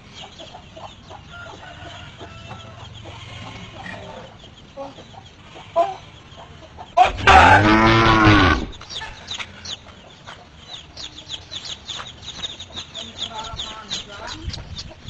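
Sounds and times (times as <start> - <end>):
chickens clucking and chirping: 0.0 - 15.0
cow mooing: 7.1 - 8.8.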